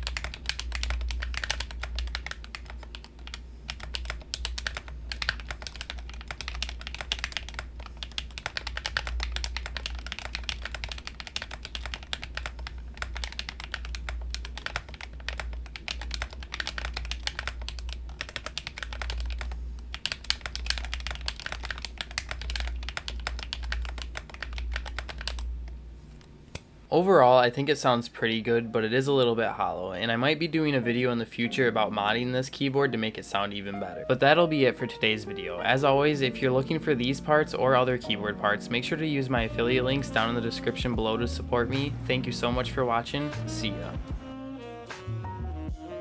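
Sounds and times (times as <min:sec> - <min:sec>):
mechanical keyboard typing: 0:00.0 - 0:25.8.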